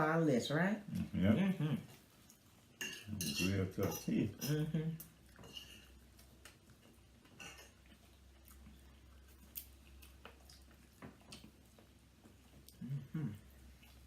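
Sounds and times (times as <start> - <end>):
low steady hum: 0.0 - 14.0
cutlery clicking on dishes: 2.8 - 4.6, 5.4 - 5.9, 7.4 - 7.8.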